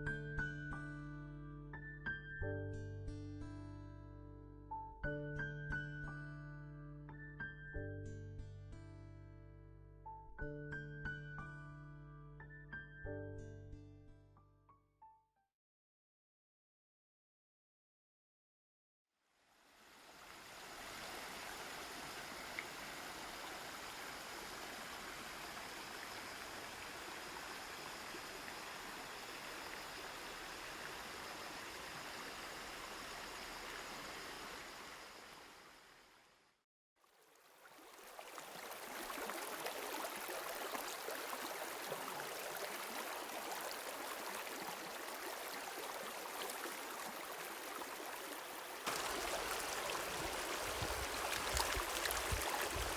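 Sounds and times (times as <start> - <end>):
stream flowing over rocks: 19.8 - 35.9, 37.0 - 52.9.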